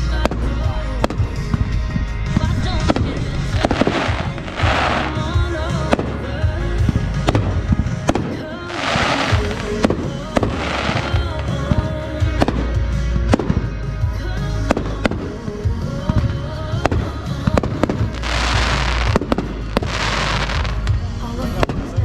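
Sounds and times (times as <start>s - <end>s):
fireworks bangs: 0.0s - 13.8s, 14.6s - 22.0s
background music: 0.0s - 22.0s
deep rumble: 0.0s - 22.0s
hissing crackling firework burst: 3.6s - 5.2s, 8.7s - 11.2s, 17.9s - 20.8s.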